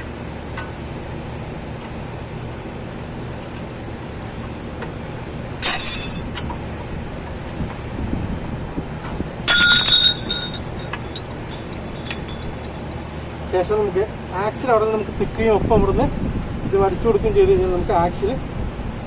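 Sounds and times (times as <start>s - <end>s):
metal tools clinking on steel: 5.6s - 6.7s, 9.5s - 13.2s.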